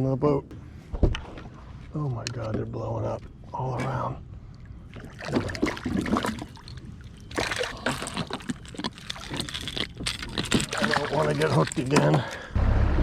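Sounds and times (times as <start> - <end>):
fish splashing at water surface: 5.0 - 12.5.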